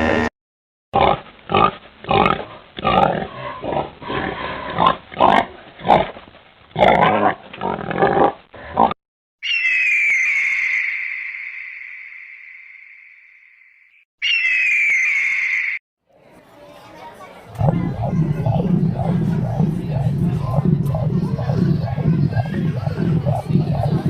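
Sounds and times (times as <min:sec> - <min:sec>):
pig grunting: 0:01.0 - 0:06.1, 0:17.5 - 0:24.0
high drawn-out animal call: 0:09.4 - 0:12.8, 0:14.2 - 0:15.8.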